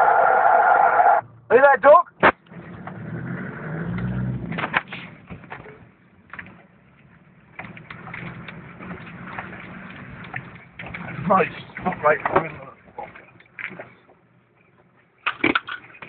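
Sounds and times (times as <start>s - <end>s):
off-road vehicle engine revving: 2.5s - 4.7s.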